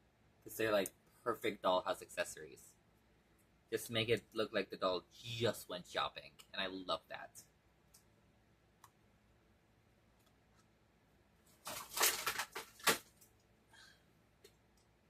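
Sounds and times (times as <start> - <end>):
packaging rustling and crinkling: 11.5 - 13.2.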